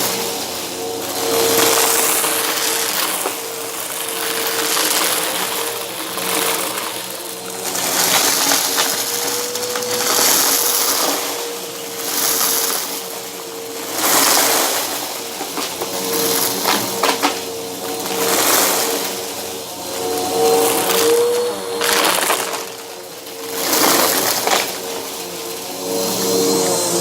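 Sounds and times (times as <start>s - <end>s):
vacuum brushroll crunching debris: 0.0s - 27.0s
vacuum motor whine: 0.0s - 27.0s.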